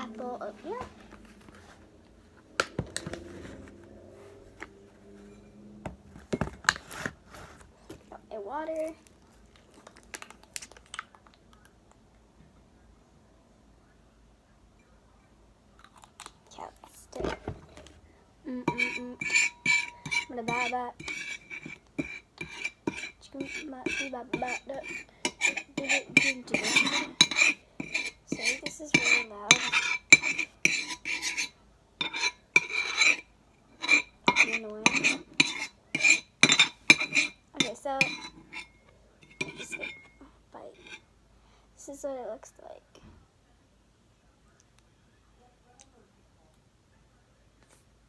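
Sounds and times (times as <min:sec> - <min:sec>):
faint hum: 0:00.0 - 0:30.7
spoon stirring and clinking in bowl: 0:05.2 - 0:07.0, 0:18.6 - 0:40.2, 0:40.8 - 0:41.0.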